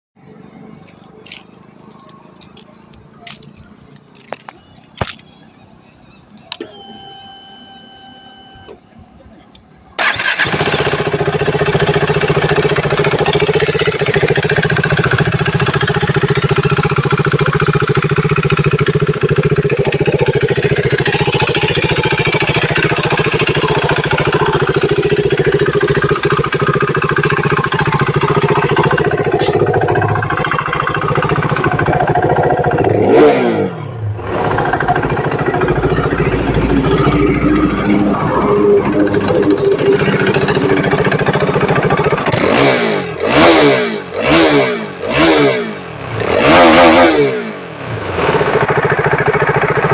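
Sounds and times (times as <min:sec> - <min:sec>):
motorcycle engine idling: 0:08.8 - 0:43.4, 0:47.7 - 0:49.9
engine revving: 0:10.0 - 0:49.9.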